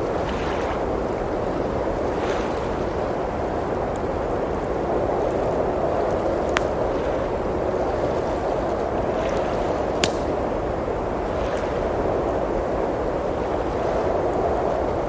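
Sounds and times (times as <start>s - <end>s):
rushing blizzard wind: 0.0s - 15.0s
wood fire crackling: 5.2s - 7.5s, 9.8s - 10.7s.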